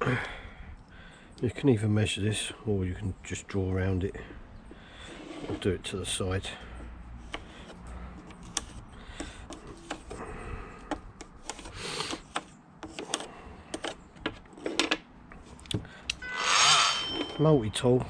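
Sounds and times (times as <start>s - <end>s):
handling clicks and knocks: 7.3s - 10.2s, 10.8s - 16.2s.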